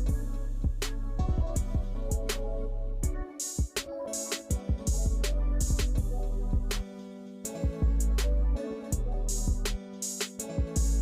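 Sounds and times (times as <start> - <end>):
background music with drum beat: 0.0 - 2.4, 3.0 - 11.0
bass line: 0.0 - 3.3, 4.9 - 6.8, 7.8 - 9.8.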